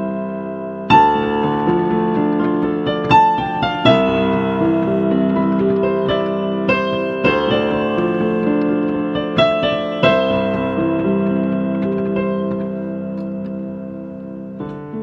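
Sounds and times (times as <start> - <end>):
slow gentle solo piano: 0.0 - 15.0.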